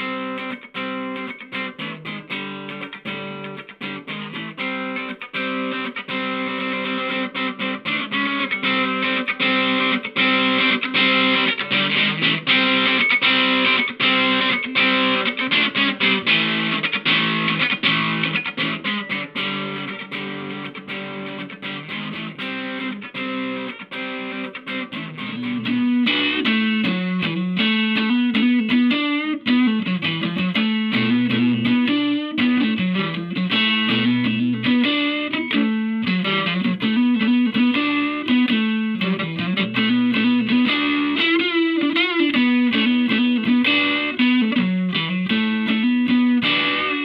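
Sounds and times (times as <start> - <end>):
driven electric guitar riff: 0.0 - 47.0.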